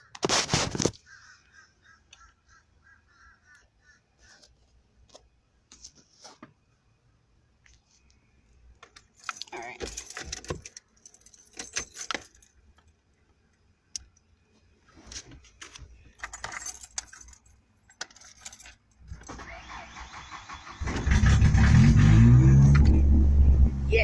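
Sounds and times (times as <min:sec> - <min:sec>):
car keys jangling: 0:08.8 - 0:13.0, 0:15.6 - 0:19.8
truck engine starting and revving: 0:19.2 - 0:24.0.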